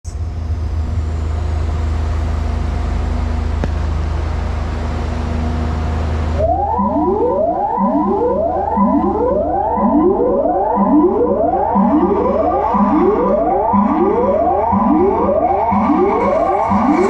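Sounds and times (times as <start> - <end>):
deep bass drone with hiss: 0.1 - 8.4
rising siren-like sweeps: 4.8 - 17.0.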